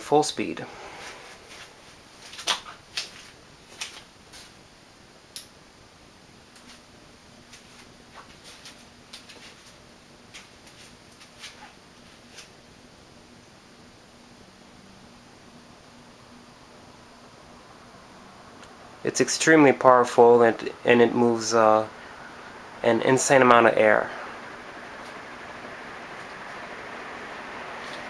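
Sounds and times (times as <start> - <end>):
ceiling fan air rush: 0.0 - 28.0
faint low hum: 0.0 - 28.0.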